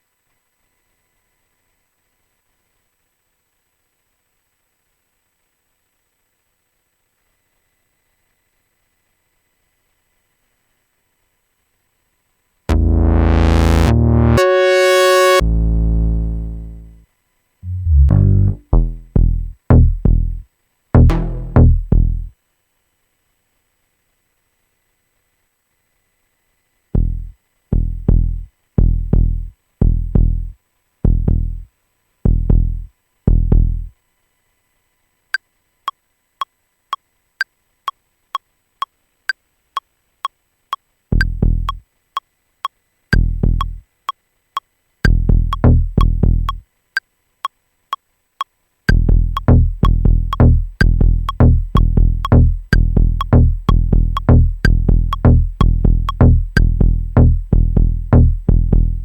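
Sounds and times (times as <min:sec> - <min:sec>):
electronic kick drum hits: 0:12.7 - 0:16.8, 0:17.6 - 0:20.4, 0:21.0 - 0:22.3, 0:27.0 - 0:30.5, 0:31.1 - 0:31.6, 0:32.3 - 0:33.9, 0:41.2 - 0:41.8, 0:43.2 - 0:43.8, 0:45.0 - 0:46.6, 0:48.9 - 0:59.0
clicky percussion hit: 0:21.0 - 0:21.8, 0:48.9 - 0:57.4.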